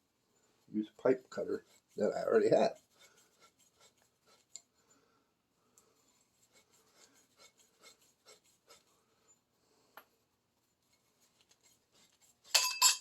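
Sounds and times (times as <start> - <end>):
metallic clink and ring: 12.5 - 13.0.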